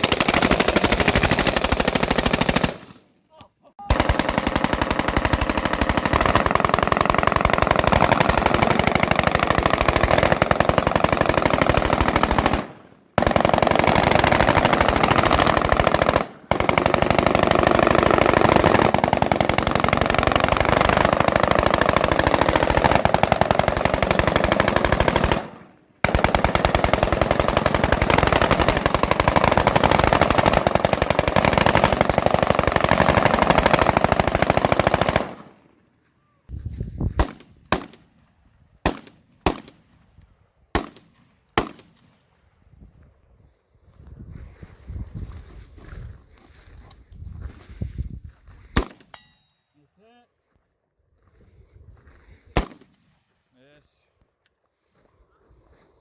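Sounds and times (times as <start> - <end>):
rapid rifle fire: 0.0 - 3.0, 3.9 - 35.6.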